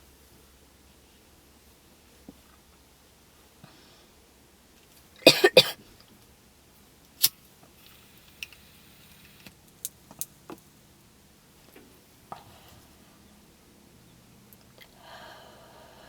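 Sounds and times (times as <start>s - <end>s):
harsh coughs: 5.2s - 5.8s.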